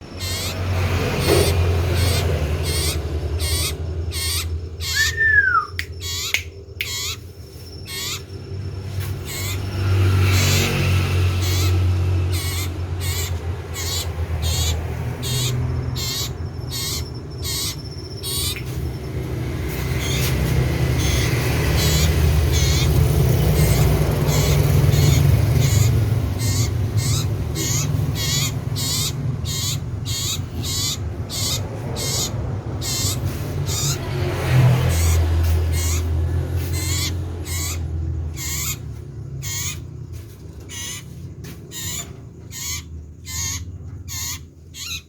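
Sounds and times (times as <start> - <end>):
bird singing sharp high notes: 0.1 - 10.8.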